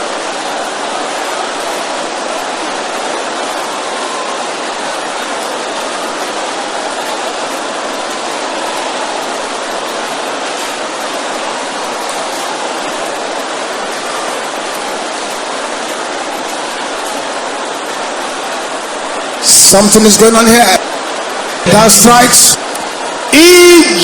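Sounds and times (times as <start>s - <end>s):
congregation praying aloud: 18.1s - 24.0s.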